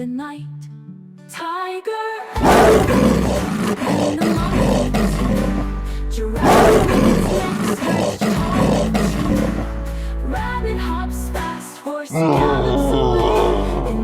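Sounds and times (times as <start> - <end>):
tiger roar: 2.4 - 9.8, 12.2 - 14.0
light background music: 2.4 - 14.0.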